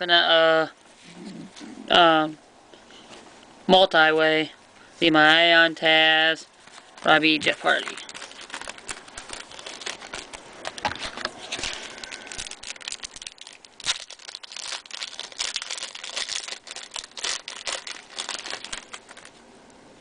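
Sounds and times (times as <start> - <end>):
trading cards crinkling and flicking: 6.5 - 19.5.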